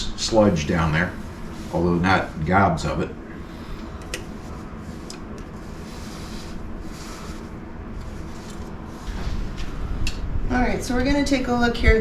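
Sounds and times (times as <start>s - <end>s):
low background rumble: 0.0s - 12.0s
faint rubbing and scraping: 0.5s - 10.0s.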